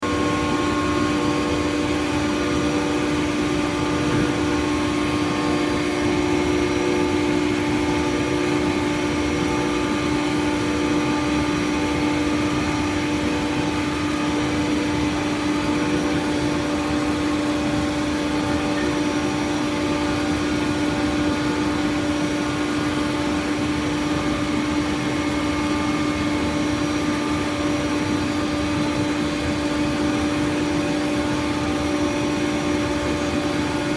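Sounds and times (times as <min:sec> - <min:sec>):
milling machine whine: 0:00.0 - 0:33.9.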